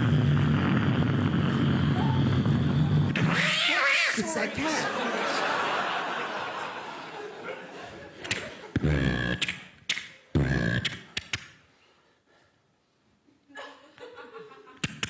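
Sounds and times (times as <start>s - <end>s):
low vocal blasts: 0.0s - 3.3s, 10.4s - 11.2s
mouth clicks: 8.2s - 11.7s, 14.8s - 15.0s.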